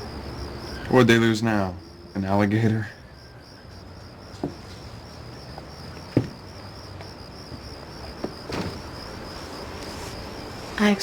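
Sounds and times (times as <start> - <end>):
crickets chirping: 0.0 - 11.0
soft knocks: 4.3 - 4.8, 5.6 - 8.9.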